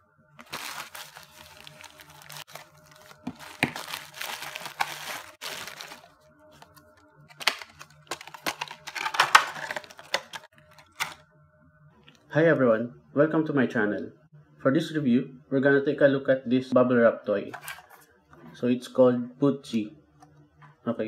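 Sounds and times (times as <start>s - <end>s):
bubble wrap popping: 0.4s - 6.1s, 6.7s - 11.2s
bubble wrap crinkling: 0.4s - 11.2s.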